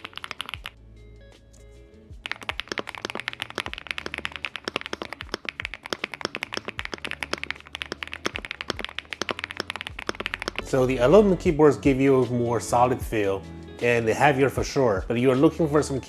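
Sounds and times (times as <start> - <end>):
fast mechanical keyboard typing: 0.0 - 0.7, 2.2 - 10.8.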